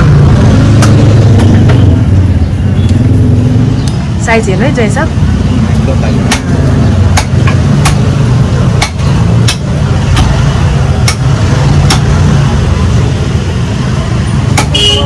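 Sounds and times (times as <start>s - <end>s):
cleaver chopping through bone: 6.2s - 10.4s, 11.0s - 12.2s, 14.5s - 14.8s.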